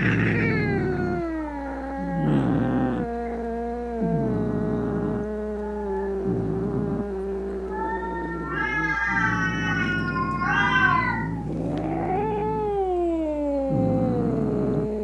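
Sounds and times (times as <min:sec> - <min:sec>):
cat yowling: 0:00.0 - 0:03.1, 0:07.7 - 0:14.1.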